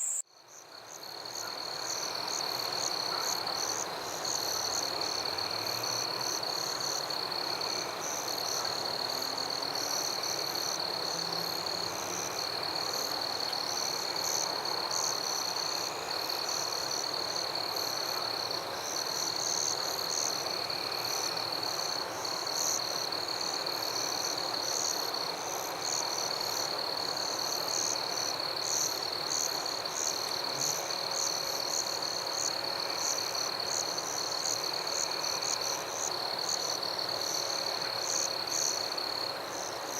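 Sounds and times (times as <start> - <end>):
frogs chirping and calling: 0.0 - 0.2
high-pitched insect trill: 0.0 - 0.2.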